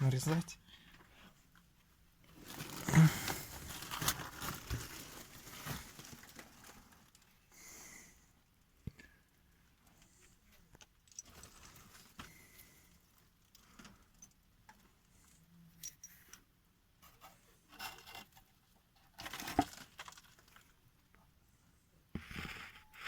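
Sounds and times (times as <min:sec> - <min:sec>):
rustling: 0:00.9 - 0:07.4.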